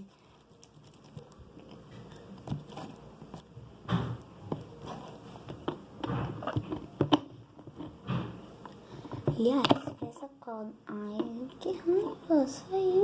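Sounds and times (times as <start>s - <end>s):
slime materials clicking and rustling: 0.0s - 3.6s.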